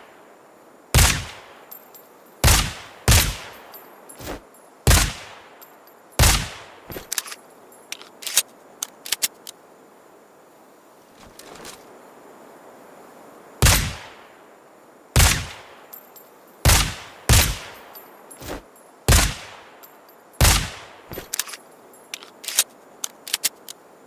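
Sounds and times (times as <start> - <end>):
suppressed pistol shots: 1.0 - 1.5, 2.4 - 3.6, 4.9 - 5.4, 6.2 - 7.4, 13.6 - 14.2, 15.2 - 15.6, 16.6 - 17.8, 19.1 - 19.6, 20.4 - 21.6
light metallic clicks: 6.9 - 9.6, 17.3 - 23.8.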